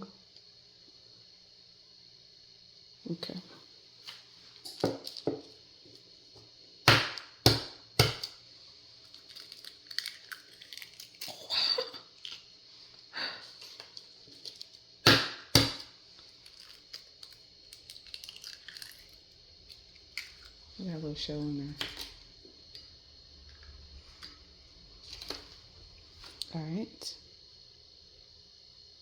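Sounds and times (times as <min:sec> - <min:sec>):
eggshells cracking: 0:09.0 - 0:12.5, 0:13.7 - 0:20.6.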